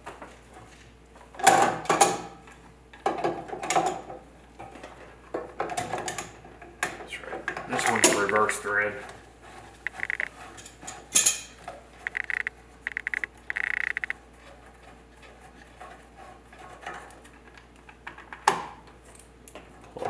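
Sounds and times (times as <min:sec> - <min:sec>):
rapid metallic clicking: 0:09.8 - 0:10.3, 0:12.0 - 0:14.2.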